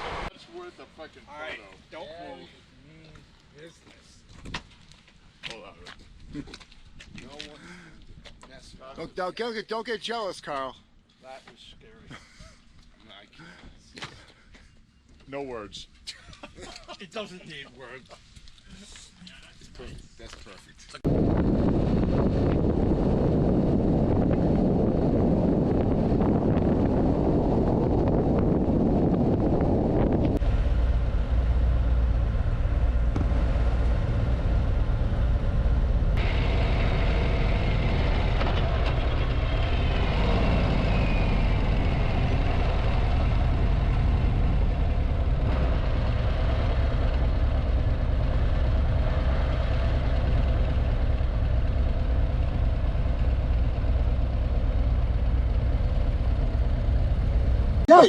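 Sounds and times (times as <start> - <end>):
motorcycle engine drone: 0.0 - 0.3, 21.1 - 57.9
wind rush: 21.0 - 51.7.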